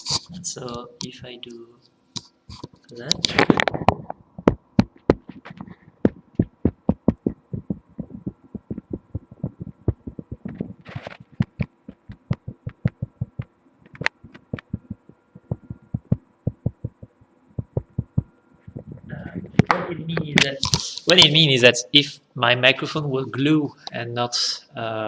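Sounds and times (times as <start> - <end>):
bone tapping on wood: 4.4 - 10.5.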